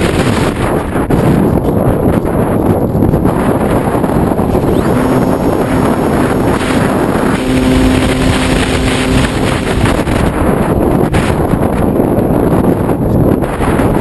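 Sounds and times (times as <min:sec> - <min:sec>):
wind rushing over microphone: 0:00.0 - 0:14.0
steady hum: 0:03.3 - 0:11.2.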